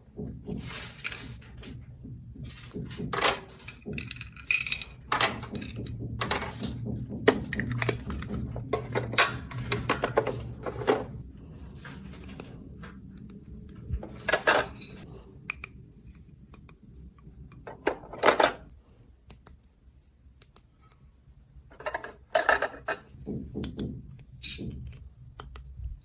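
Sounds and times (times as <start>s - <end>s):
plastic toy pieces clicking: 3.6s - 5.9s.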